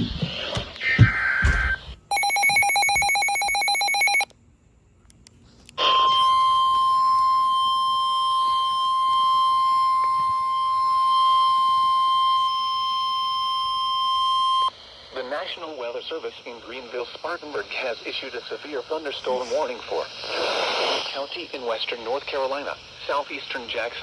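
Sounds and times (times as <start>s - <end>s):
steady warning alarm tone: 1.0s - 4.3s
two-tone data burst: 2.1s - 4.3s.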